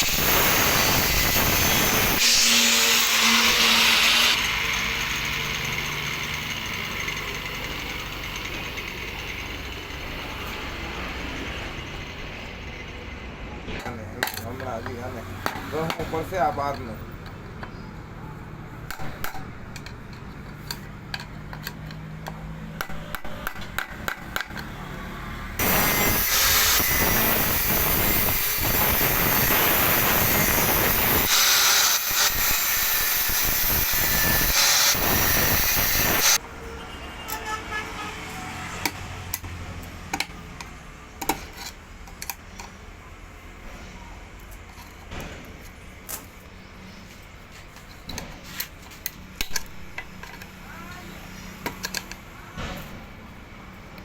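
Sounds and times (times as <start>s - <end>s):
loud steady hissing: 25.6s - 36.4s.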